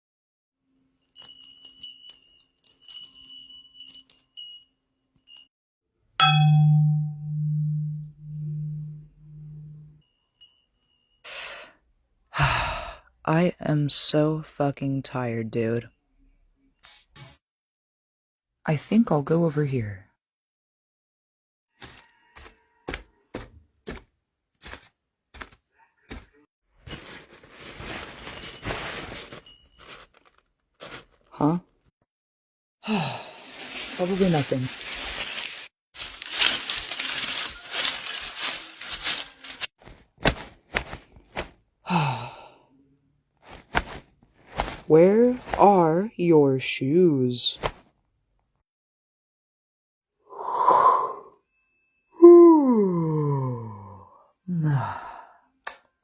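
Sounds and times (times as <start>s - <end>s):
wind chimes tinkling: 1.0s - 5.5s, 6.2s - 11.8s, 27.8s - 30.3s
deep chime strike: 6.2s - 9.9s
footsteps on forest floor: 21.7s - 30.2s, 30.8s - 31.2s, 33.3s - 41.6s, 43.4s - 45.7s
brush rustling and crackling: 26.8s - 31.3s, 33.3s - 41.6s, 43.4s - 45.7s.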